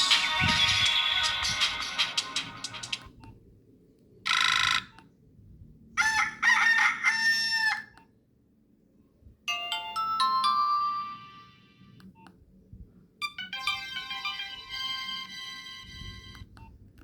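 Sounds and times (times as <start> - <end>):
synthesized ringtone melody: 0.0 - 3.1, 9.5 - 12.0, 13.4 - 16.3.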